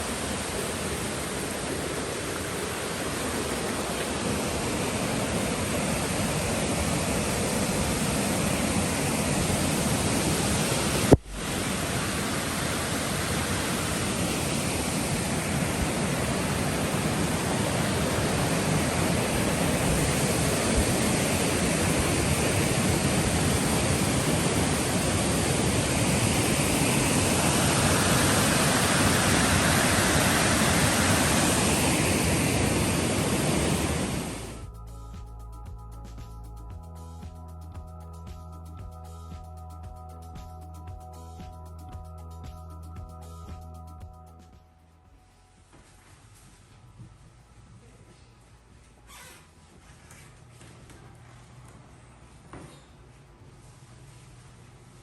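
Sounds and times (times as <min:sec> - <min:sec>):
rushing water: 0:00.0 - 0:34.6.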